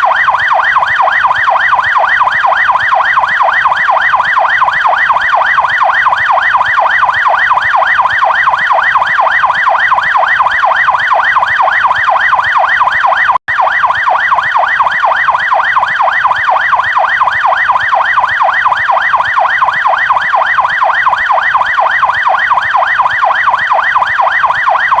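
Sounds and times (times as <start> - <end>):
police siren yelp: 0.0 - 25.0.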